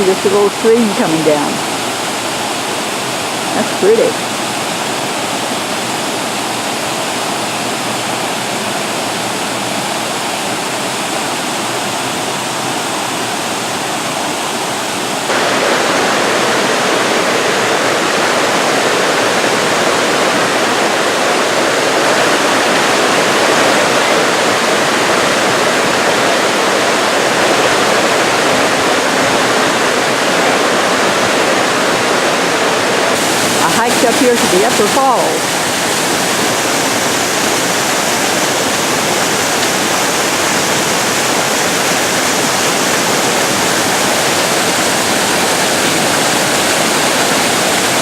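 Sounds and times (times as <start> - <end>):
waterfall rushing: 0.0 - 48.0.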